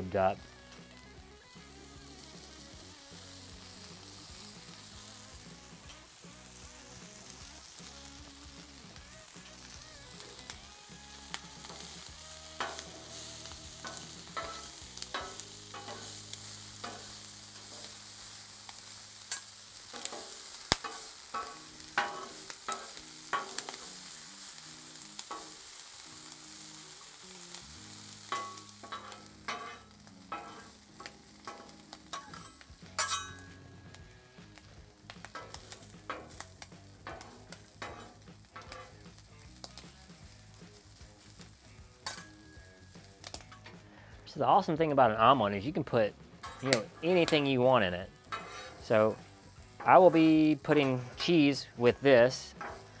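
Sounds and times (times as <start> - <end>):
food sizzling on a griddle: 0.0 - 53.0
metal spatula scraping steel: 11.6 - 18.4, 19.2 - 23.9, 28.0 - 34.1, 35.3 - 36.4, 37.0 - 39.2, 42.0 - 43.9, 46.3 - 53.0.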